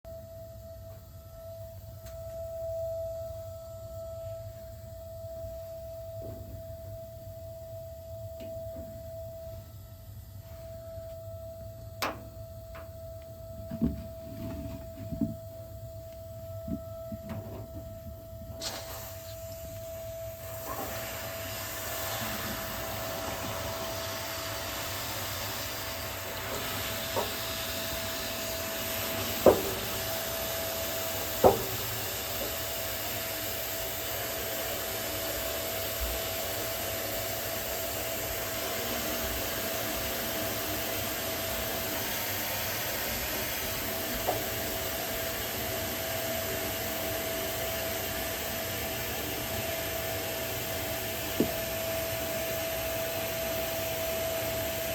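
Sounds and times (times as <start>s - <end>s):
water heater whining: 0.1s - 54.9s
burner hiss: 18.5s - 54.9s.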